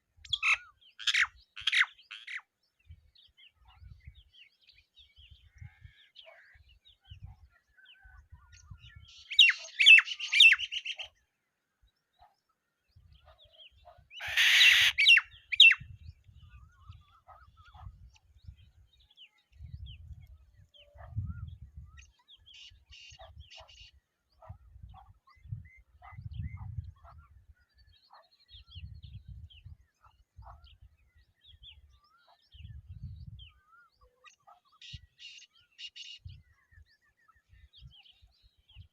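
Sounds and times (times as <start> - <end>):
birds chirping: 0.2 - 38.9.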